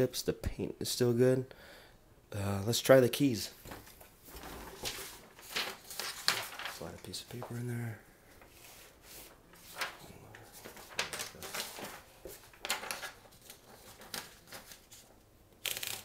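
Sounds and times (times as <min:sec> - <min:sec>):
paper rustling in typewriter: 0:04.3 - 0:07.6, 0:08.5 - 0:16.0.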